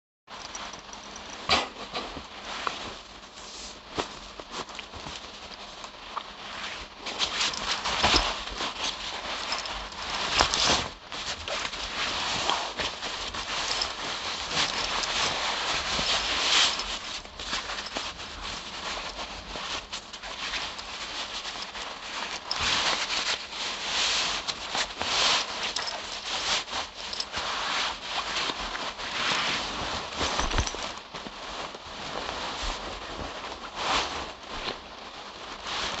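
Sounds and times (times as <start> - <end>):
fabric rustling: 0.3 - 5.7, 6.3 - 36.0.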